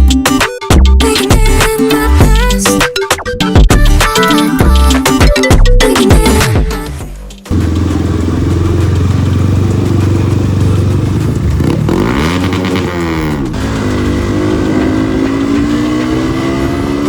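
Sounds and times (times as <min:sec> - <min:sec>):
music: 0:00.0 - 0:17.0
motorcycle engine revving: 0:07.5 - 0:17.0.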